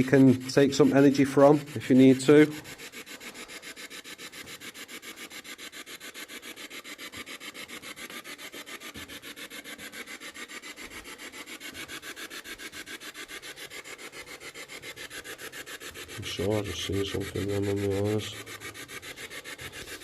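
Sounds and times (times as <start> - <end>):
pulsing radio static: 0.0 - 2.5, 16.2 - 18.5.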